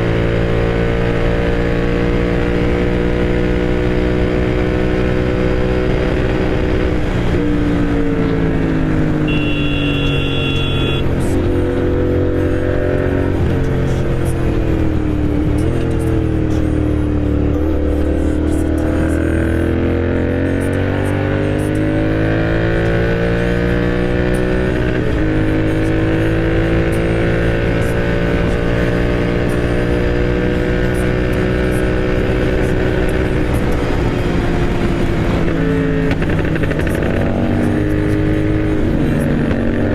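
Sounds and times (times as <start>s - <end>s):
motorcycle engine running: 0.0s - 20.7s, 21.5s - 39.9s
high two-tone beep: 9.2s - 11.1s.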